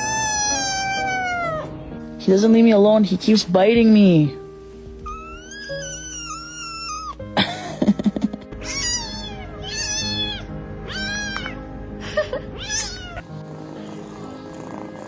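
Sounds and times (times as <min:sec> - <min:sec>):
cat meowing: 0:00.0 - 0:01.9, 0:05.0 - 0:07.2, 0:08.6 - 0:11.7, 0:12.5 - 0:15.0
background music: 0:00.0 - 0:15.0.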